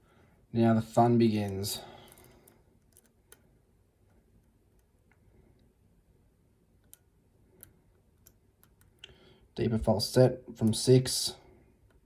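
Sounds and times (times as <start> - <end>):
lock pick clicking in a lock: 2.1 - 3.4.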